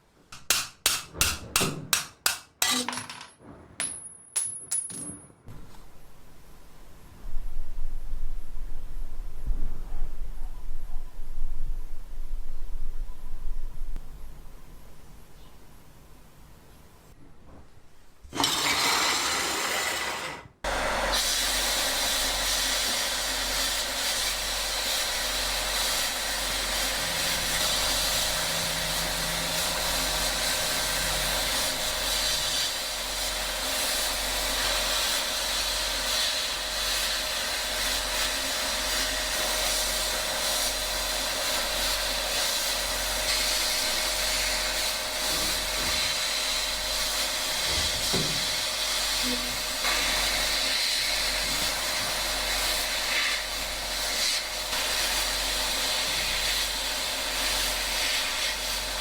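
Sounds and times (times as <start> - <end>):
power tool running: 18.3 - 22.5.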